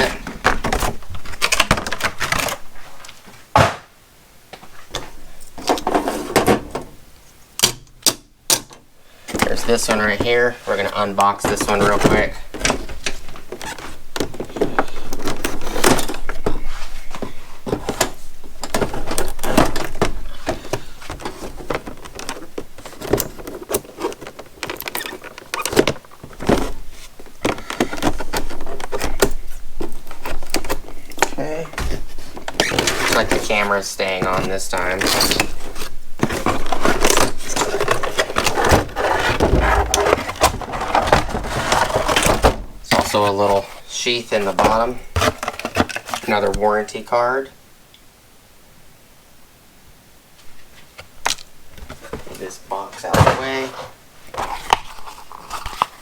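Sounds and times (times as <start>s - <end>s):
plastic packaging clattering: 0.0s - 3.9s, 8.6s - 47.0s, 50.6s - 56.0s.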